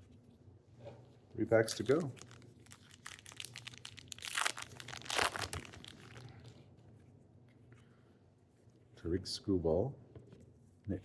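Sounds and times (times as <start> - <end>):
card pack wrapper crinkling: 1.6 - 6.6.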